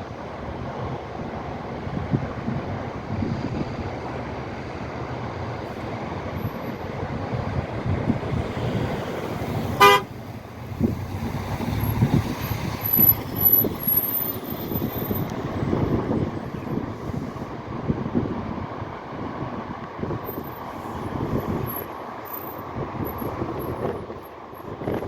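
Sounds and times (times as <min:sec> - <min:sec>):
road traffic rumbling: 0:00.0 - 0:25.0
vehicle horn toot: 0:09.7 - 0:10.1.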